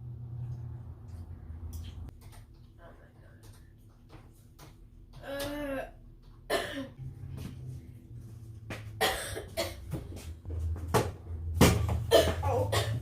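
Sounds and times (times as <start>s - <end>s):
person coughing: 6.5s - 7.0s, 9.0s - 9.9s, 12.1s - 13.0s.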